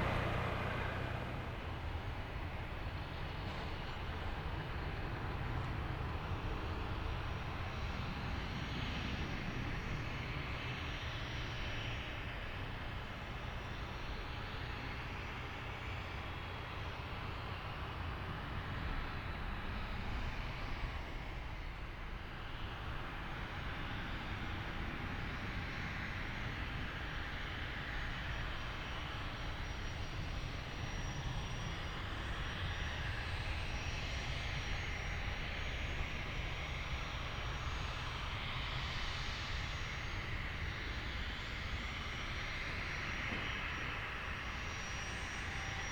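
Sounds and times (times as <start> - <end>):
faint high jet whine: 0.0 - 3.7
jet engines rumbling: 0.0 - 5.4.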